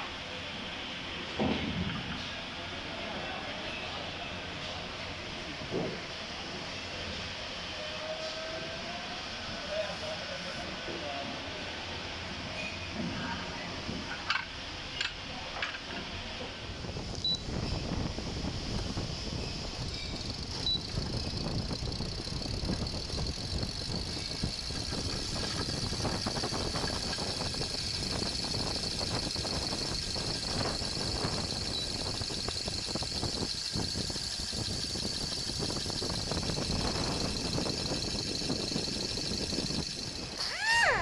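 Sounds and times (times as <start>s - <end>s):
fan running with high-pitched whine: 0.0s - 41.0s.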